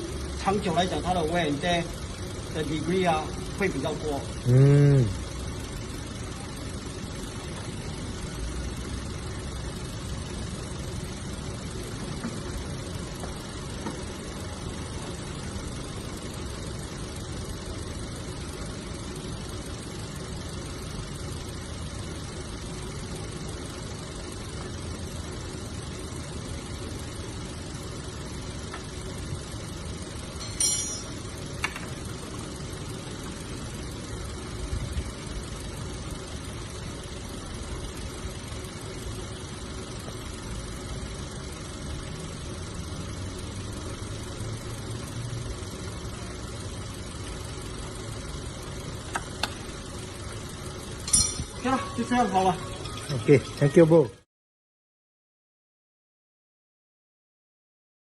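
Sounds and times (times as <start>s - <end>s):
car engine idling: 0.0s - 54.2s.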